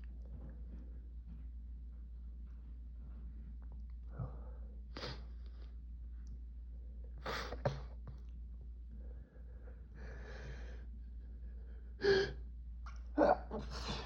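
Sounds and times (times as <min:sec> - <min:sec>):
heavy breathing: 0:08.9 - 0:12.4.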